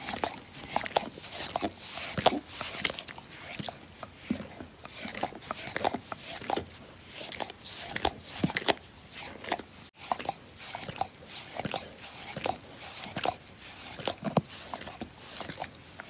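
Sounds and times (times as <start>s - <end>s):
dog licking: 0.0s - 16.0s.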